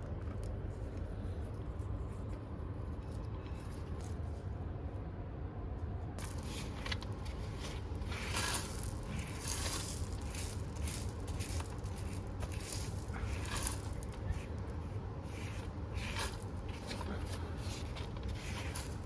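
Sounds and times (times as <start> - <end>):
steady low hum: 0.0 - 19.0
crunching and rustling handling: 6.2 - 19.0.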